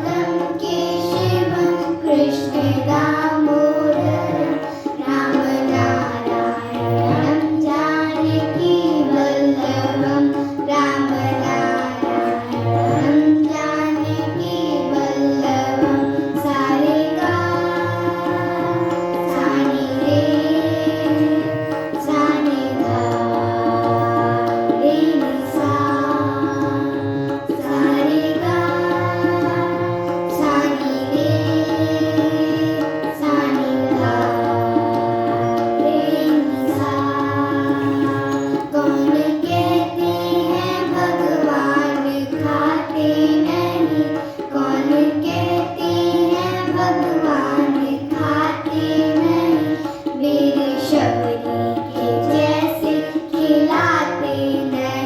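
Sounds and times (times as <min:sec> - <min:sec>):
people singing: 0:00.0 - 0:55.0
tabla: 0:00.0 - 0:55.0.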